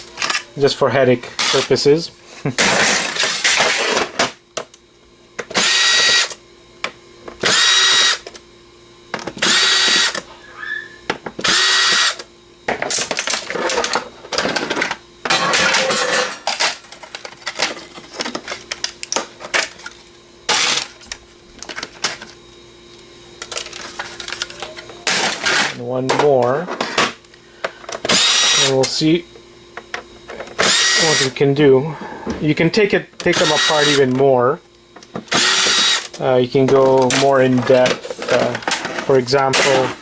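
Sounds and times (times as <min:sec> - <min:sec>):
power driver whirring: 0:00.0 - 0:02.0, 0:02.6 - 0:15.8, 0:16.4 - 0:32.5, 0:33.2 - 0:40.0
metal and plastic parts rattling: 0:12.7 - 0:22.4, 0:23.4 - 0:27.2, 0:35.1 - 0:40.0.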